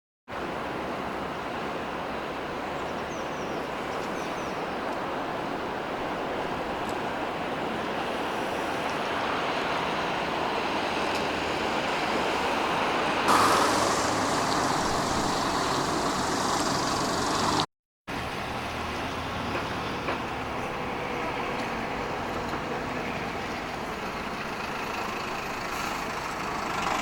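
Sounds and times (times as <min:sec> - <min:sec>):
city street traffic: 0:00.3 - 0:27.0.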